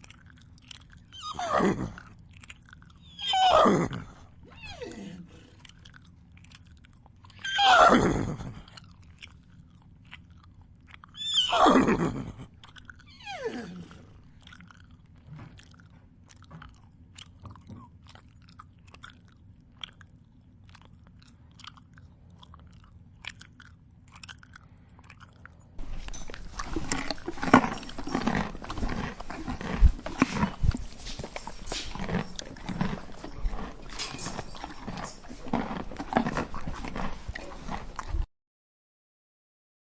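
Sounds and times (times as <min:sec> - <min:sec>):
horse whinnying: 0:01.1 - 0:02.0, 0:03.0 - 0:05.3, 0:07.4 - 0:08.4, 0:11.2 - 0:12.4, 0:13.0 - 0:14.0
horse chewing feed: 0:25.8 - 0:38.3.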